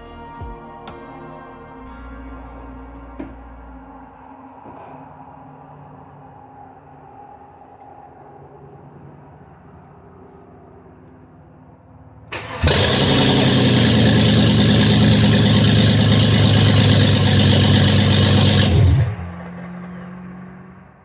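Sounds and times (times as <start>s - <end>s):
car engine starting and running: 12.3s - 21.0s.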